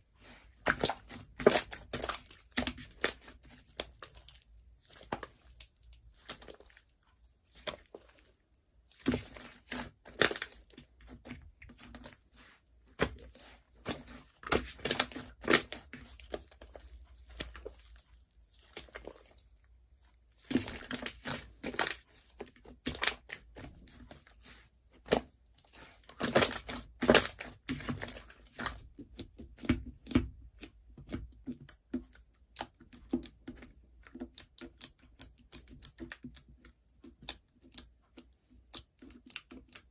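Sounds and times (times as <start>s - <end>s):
slime squished by hand: 8.9s - 31.3s.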